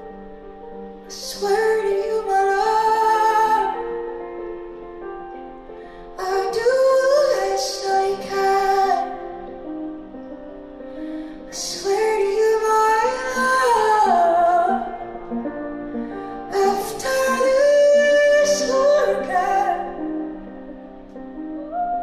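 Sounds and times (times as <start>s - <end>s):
soft instrumental accompaniment: 0.0s - 22.0s
woman singing: 1.1s - 4.2s, 6.2s - 9.5s, 11.5s - 15.2s, 16.4s - 20.4s.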